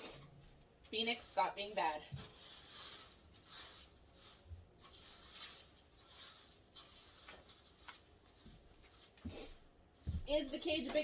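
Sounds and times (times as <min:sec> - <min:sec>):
faint rustling: 0:00.0 - 0:11.0.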